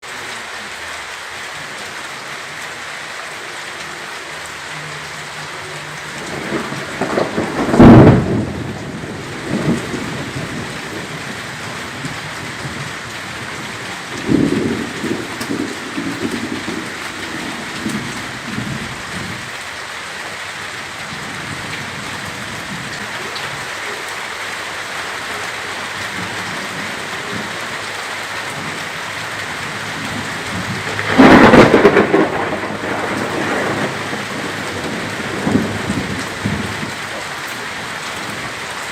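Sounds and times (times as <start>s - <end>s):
heavy rain: 0.0s - 38.9s
thunder crack and rumble: 6.2s - 19.6s, 25.9s - 38.9s.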